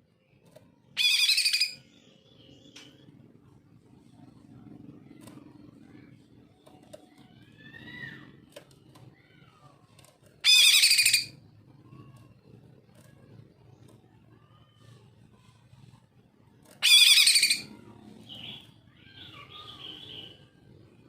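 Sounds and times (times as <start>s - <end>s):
harsh bird chattering: 1.0s - 1.8s, 10.3s - 11.3s, 16.8s - 20.4s.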